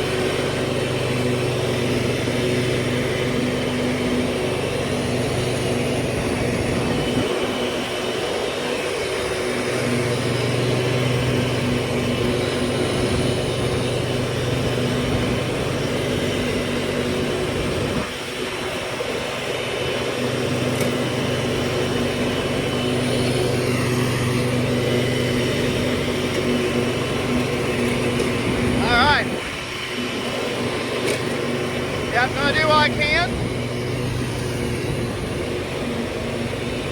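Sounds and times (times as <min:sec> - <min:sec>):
riding lawnmower engine running: 0:00.0 - 0:36.9.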